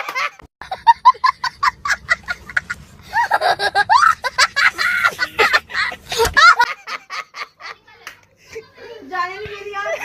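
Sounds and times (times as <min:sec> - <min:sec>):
person laughing: 0:00.0 - 0:07.6.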